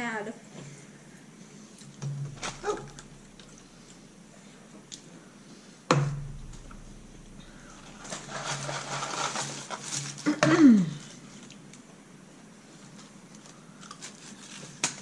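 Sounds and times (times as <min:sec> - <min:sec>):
rustling and handling noise: 0:00.5 - 0:05.6, 0:06.4 - 0:15.0
sharp thump: 0:05.9 - 0:08.3
falling whine: 0:05.9 - 0:11.4.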